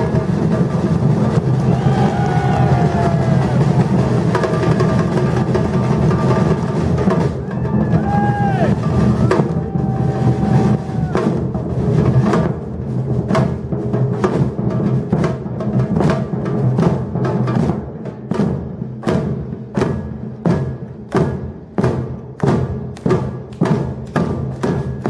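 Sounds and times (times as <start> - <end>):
deep bass drums: 0.0 - 12.6
drum ensemble playing: 0.0 - 25.0.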